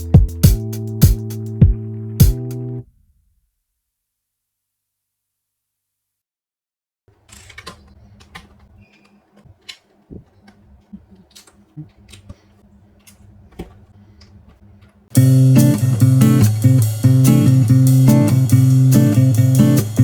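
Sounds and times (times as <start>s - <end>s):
loud guitar music: 0.0s - 2.8s, 15.2s - 20.0s.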